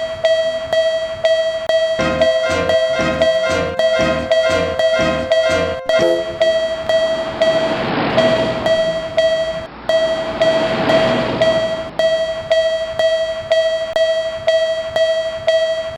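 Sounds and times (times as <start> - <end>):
railroad crossing bell ringing: 0.0 - 15.9
train rushing past: 2.1 - 12.6.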